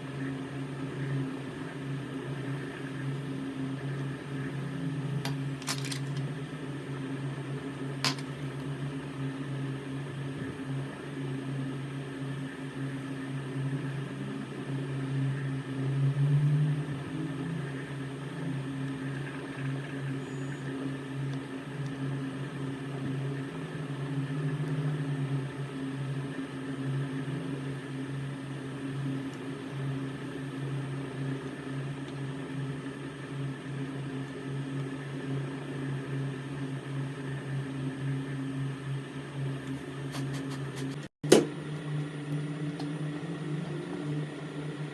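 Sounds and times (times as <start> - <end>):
steady machine hum: 0.0 - 15.5, 35.0 - 44.9
sharp click: 5.3 - 6.2, 8.0 - 8.4, 40.2 - 41.5.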